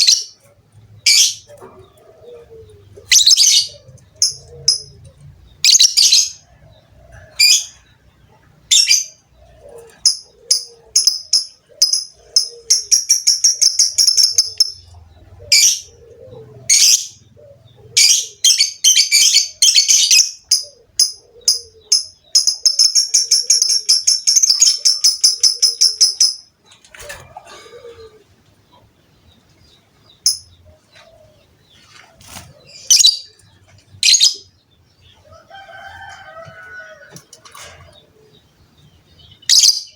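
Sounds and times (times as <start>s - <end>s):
lovebird chirping and trilling: 1.0s - 1.6s, 3.0s - 5.0s, 5.6s - 6.4s, 8.7s - 9.2s, 10.0s - 16.0s, 16.7s - 17.3s, 18.0s - 26.5s, 32.6s - 33.4s, 34.0s - 34.5s, 39.2s - 39.9s.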